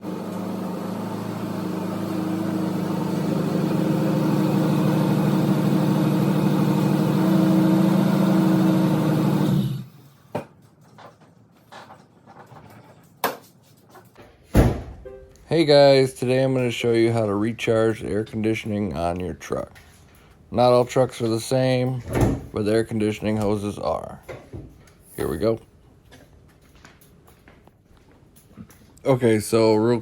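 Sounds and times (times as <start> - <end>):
truck engine running: 0.0 - 9.9.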